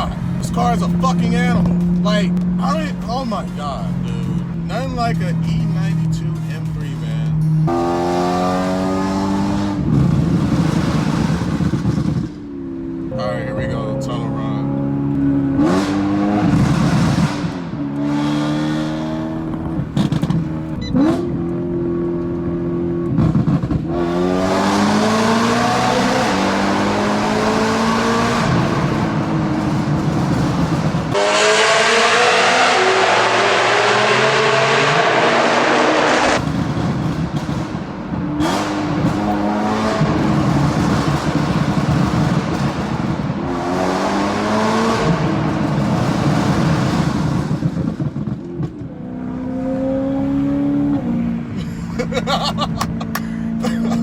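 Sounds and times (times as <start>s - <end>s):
car engine revving: 0.0s - 54.0s
exhaust cracks on overrun: 19.4s - 20.8s, 36.3s - 39.4s, 40.0s - 43.5s, 45.0s - 48.9s.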